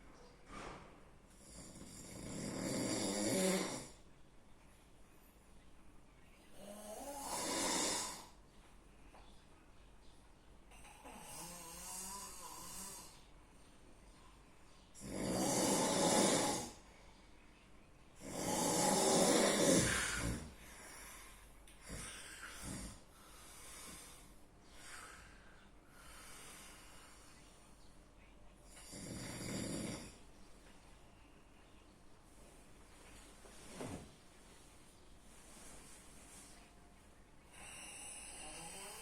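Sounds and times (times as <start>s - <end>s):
faint snoring breaths: 0.5s - 4.0s, 6.5s - 8.4s, 10.7s - 13.3s, 15.0s - 17.0s, 18.2s - 27.5s, 28.6s - 30.3s, 37.4s - 39.0s
person snoring heavily: 1.4s - 4.0s, 6.6s - 8.3s, 15.0s - 16.8s, 18.2s - 20.6s, 21.8s - 23.0s, 28.8s - 30.2s.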